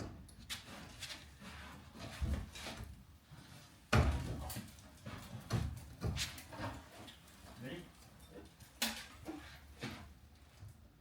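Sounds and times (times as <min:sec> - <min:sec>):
hollow knocks and bumps: 0:03.9 - 0:07.1.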